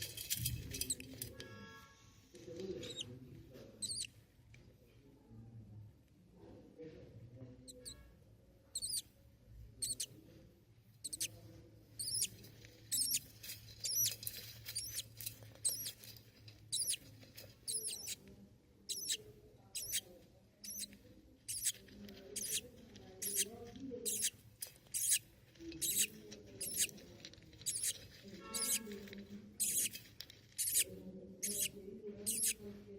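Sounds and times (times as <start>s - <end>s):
budgerigar chicks cheeping: 3.8s - 4.1s, 8.8s - 9.0s, 11.0s - 11.3s, 12.0s - 12.3s, 12.9s - 16.0s, 16.7s - 17.0s, 17.7s - 18.2s, 18.9s - 19.2s, 19.8s - 20.0s, 20.6s - 20.9s, 21.5s - 21.8s, 23.2s - 23.4s, 24.1s - 24.3s, 24.9s - 25.2s, 25.8s - 26.9s, 27.6s - 28.9s, 29.6s - 30.0s, 30.6s - 31.7s, 32.3s - 32.6s.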